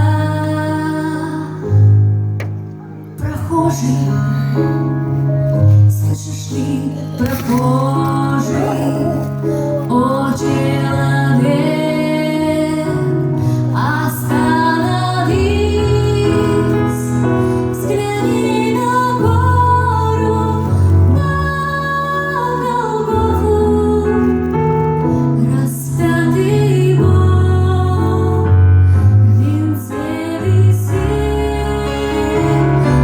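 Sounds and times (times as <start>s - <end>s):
woman singing slow song: 0.0s - 1.9s, 3.2s - 5.0s, 5.8s - 24.4s
keyboard accompaniment: 0.0s - 33.0s.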